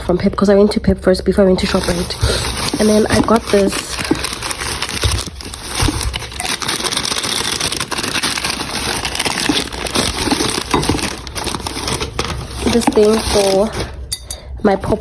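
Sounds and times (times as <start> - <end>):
plastic packaging crinkling: 1.6 - 14.1.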